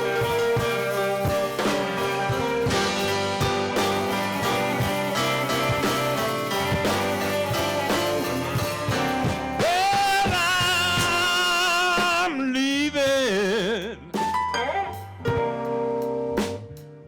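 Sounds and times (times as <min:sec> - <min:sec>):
guitar lead with vibrato: 0:00.0 - 0:11.1
blues band playing: 0:00.0 - 0:17.0.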